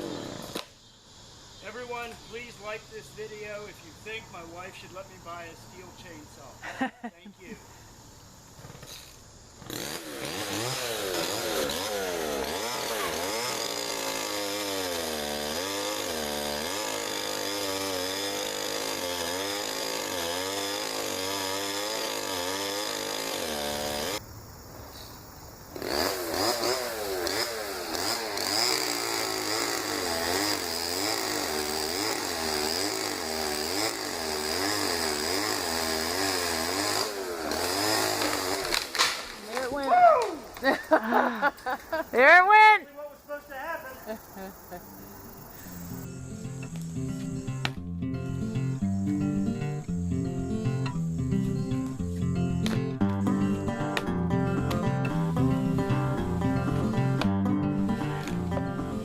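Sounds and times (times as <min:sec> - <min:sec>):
chainsaw cutting wood: 0:00.0 - 0:00.8, 0:08.6 - 0:24.2, 0:25.7 - 0:41.8.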